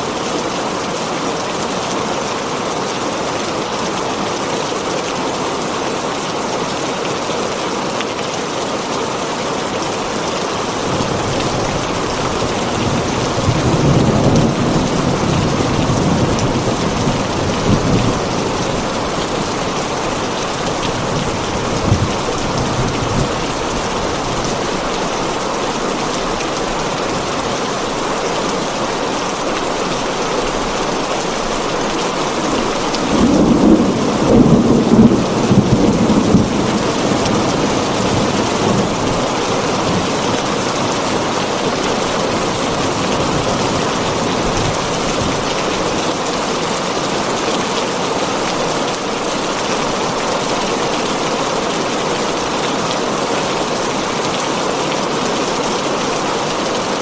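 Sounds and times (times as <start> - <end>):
heavy rain on a tin roof: 0.0 - 57.0
thunder rumbling: 10.6 - 45.9.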